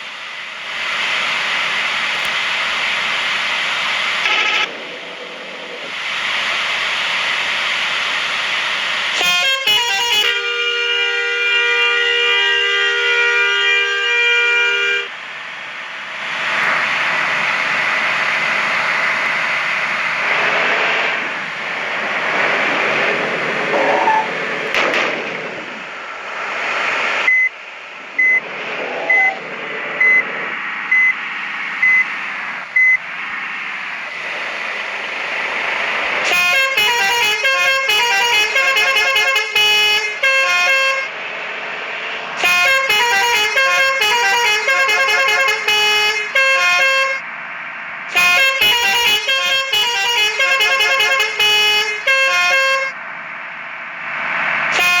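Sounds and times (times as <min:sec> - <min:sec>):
steady rushing noise: 0:00.0 - 0:10.2, 0:15.0 - 0:39.4, 0:40.1 - 0:44.8, 0:47.2 - 0:48.6, 0:52.9 - 0:55.0
multi-tone musical air horn: 0:09.2 - 0:15.1, 0:36.2 - 0:41.1, 0:42.4 - 0:47.2, 0:48.1 - 0:53.0, 0:54.8 - 0:55.0
short high beeps: 0:29.1 - 0:29.4.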